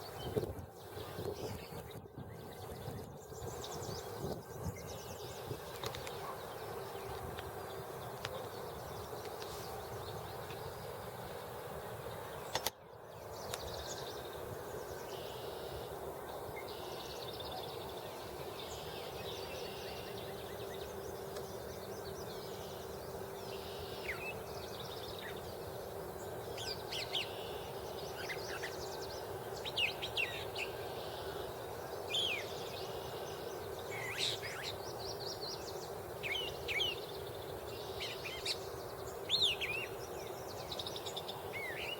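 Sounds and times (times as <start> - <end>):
songbirds singing: 0.0 - 41.9
sharp click: 12.5 - 12.8.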